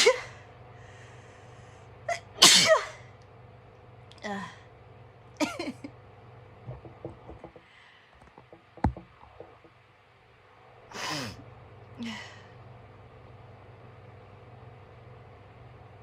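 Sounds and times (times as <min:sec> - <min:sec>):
sharp tap: 0:08.4 - 0:09.7.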